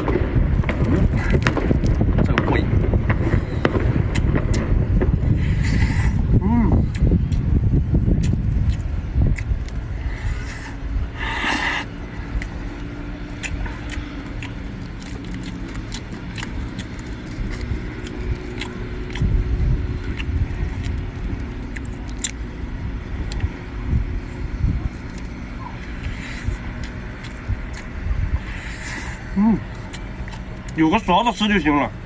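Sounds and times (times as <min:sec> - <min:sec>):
steady low rumble: 0:00.0 - 0:32.0
chewing seafood clicks and crackles: 0:11.9 - 0:24.1, 0:24.9 - 0:31.8.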